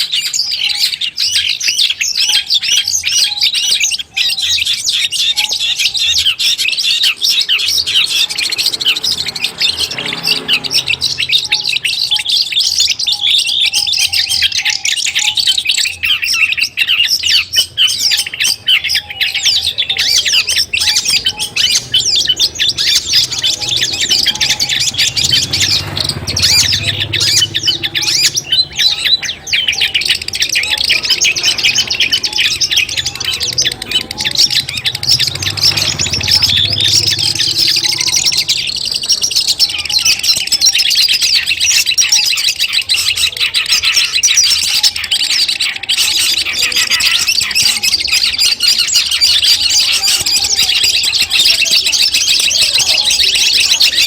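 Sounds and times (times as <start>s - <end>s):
bird chattering song: 0.0s - 54.0s.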